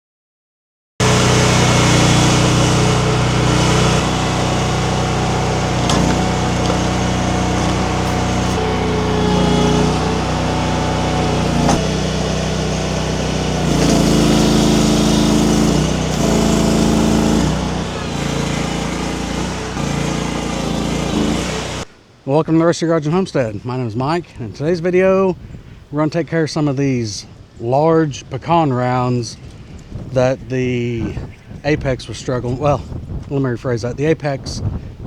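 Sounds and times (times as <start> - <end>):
firewood splitter engine running: 1.0 - 21.9
sharp knocks: 1.8 - 10.2.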